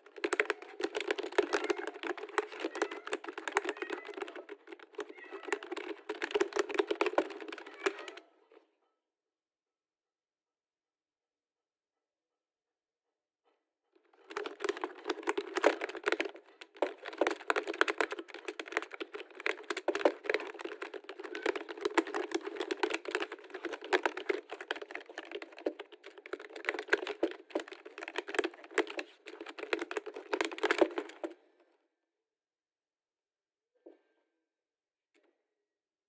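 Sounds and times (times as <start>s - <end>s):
fast typing on keyboard: 0.0s - 8.2s, 14.2s - 31.4s.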